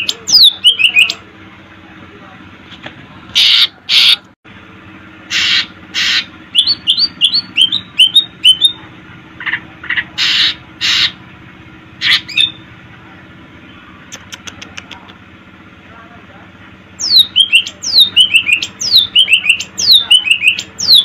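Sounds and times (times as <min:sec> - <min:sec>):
bird singing harsh rasping calls: 0:00.0 - 0:01.2, 0:03.4 - 0:04.2, 0:05.3 - 0:08.8, 0:09.4 - 0:11.2, 0:12.0 - 0:12.7, 0:17.0 - 0:21.0.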